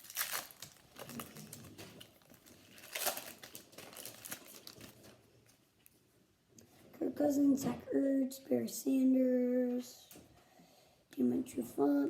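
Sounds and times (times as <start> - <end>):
foil wrapper crinkling: 0.0 - 5.3.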